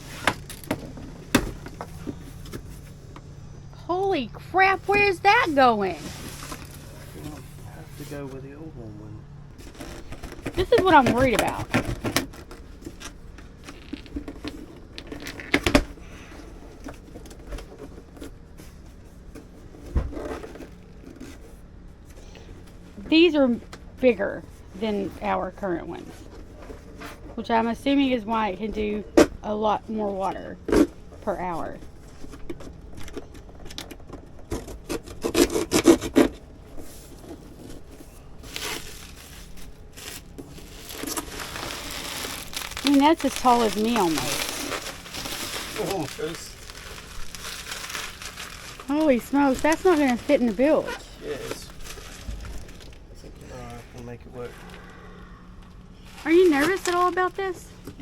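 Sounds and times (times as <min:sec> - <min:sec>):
parts rubbing and scraping: 0:04.1 - 0:08.5, 0:09.6 - 0:23.3, 0:30.1 - 0:47.4
packaging rustling: 0:05.4 - 0:07.4, 0:09.6 - 0:22.1, 0:32.0 - 0:53.2, 0:55.7 - 0:58.0.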